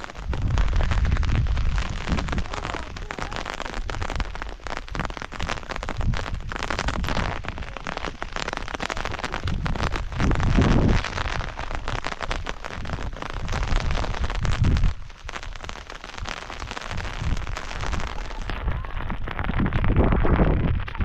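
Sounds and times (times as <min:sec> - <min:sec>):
rain pattering: 0:00.0 - 0:21.0
wind gusts on microphone: 0:00.0 - 0:21.0.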